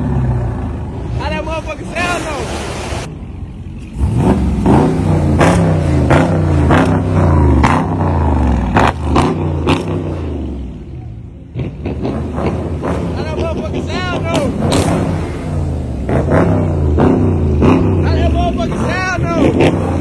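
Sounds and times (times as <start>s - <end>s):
car engine revving: 0.0s - 20.0s
exhaust cracks: 3.5s - 10.6s, 11.5s - 20.0s.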